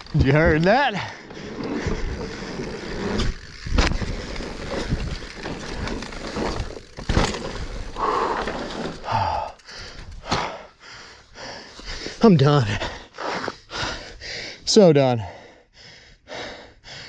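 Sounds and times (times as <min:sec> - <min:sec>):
bike tyres rumbling on dirt: 0:00.0 - 0:10.7
bike knocking over bumps: 0:00.1 - 0:01.0, 0:01.8 - 0:09.0.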